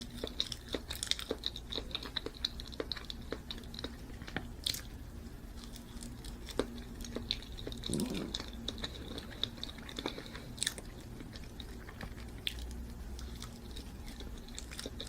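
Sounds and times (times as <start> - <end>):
person chewing banana: 0.0 - 15.0.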